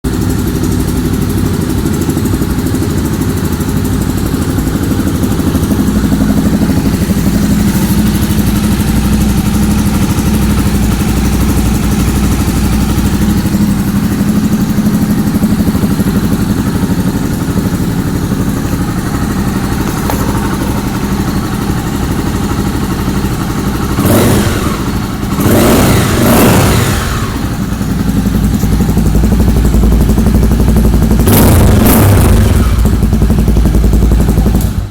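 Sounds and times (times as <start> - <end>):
motorcycle engine idling and revving: 0.1 - 34.9.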